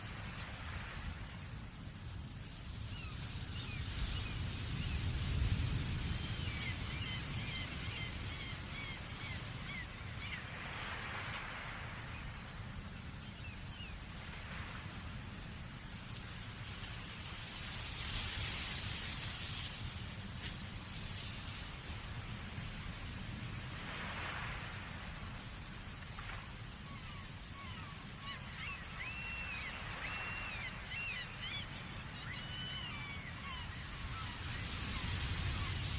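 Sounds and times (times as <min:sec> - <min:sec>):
gulls calling: 0:27.0 - 0:34.7.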